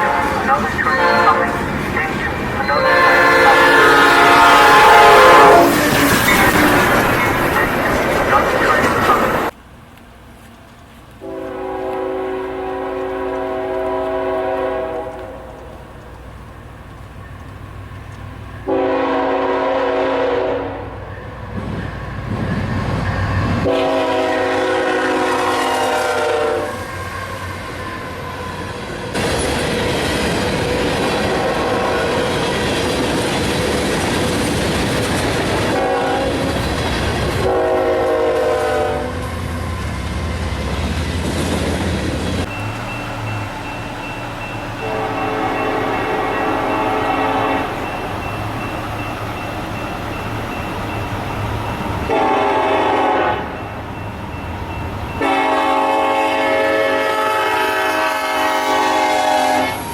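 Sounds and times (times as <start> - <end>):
locomotive horn blasts: 0.0 - 5.9, 11.2 - 15.7, 18.6 - 21.0, 23.6 - 26.9, 31.2 - 32.2, 35.7 - 36.6, 37.4 - 39.4, 42.4 - 48.2, 52.0 - 53.6, 55.2 - 59.9
train rumble and wheel clatter: 0.0 - 59.9.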